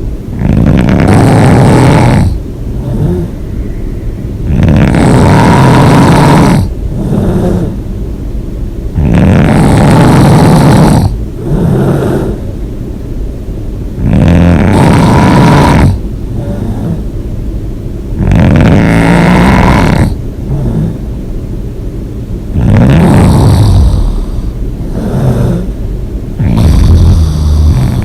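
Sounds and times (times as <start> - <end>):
person snoring loudly: 0.3 - 3.4, 4.4 - 7.8, 9.0 - 12.5, 14.0 - 17.1, 18.2 - 21.0, 22.6 - 25.8, 26.4 - 28.0.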